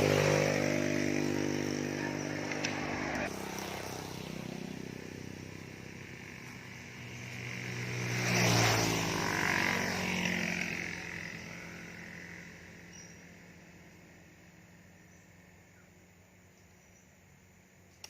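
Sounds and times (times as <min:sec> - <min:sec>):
chainsaw engine running: 0:00.0 - 0:12.9.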